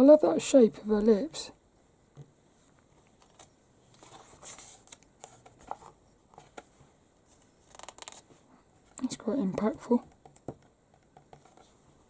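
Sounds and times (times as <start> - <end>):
paper pages rustling: 2.9 - 8.3
small clicks and taps: 10.1 - 11.7.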